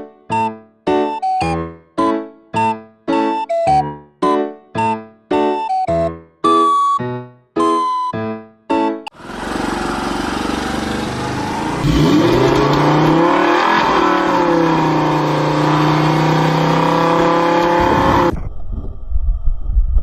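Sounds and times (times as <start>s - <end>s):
car engine revving: 9.2s - 18.3s.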